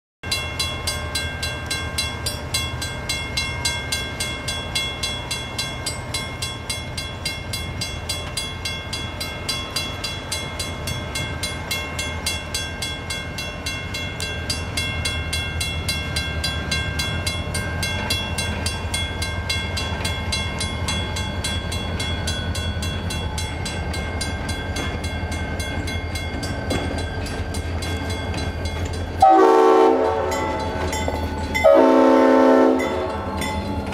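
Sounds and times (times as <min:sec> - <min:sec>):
crossing warning bell ringing: 0:00.2 - 0:33.9
diesel locomotive rumble: 0:00.3 - 0:33.9
locomotive horn blowing: 0:29.2 - 0:30.7, 0:31.6 - 0:33.3.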